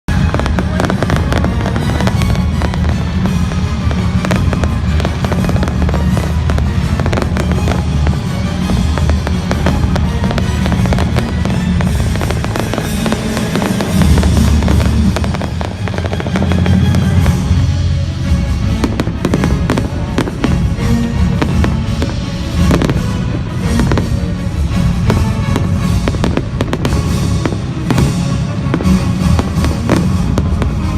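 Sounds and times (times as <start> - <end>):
fireworks bangs and crackles: 0.1 - 30.9
loud music playing: 0.1 - 30.9.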